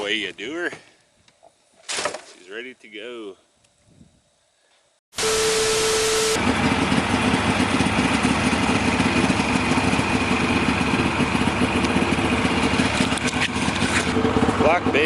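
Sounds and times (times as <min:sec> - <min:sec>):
steady whine: 0:05.2 - 0:15.0
vehicle engine running: 0:05.2 - 0:15.0.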